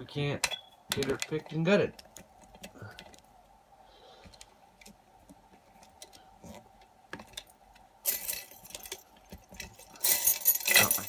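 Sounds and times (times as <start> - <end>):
keys jangling: 8.1 - 9.0, 9.6 - 11.0.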